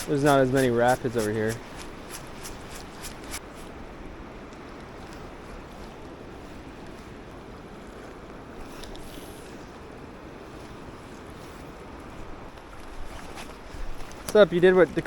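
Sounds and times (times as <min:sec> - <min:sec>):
river water rushing: 0:00.0 - 0:04.4.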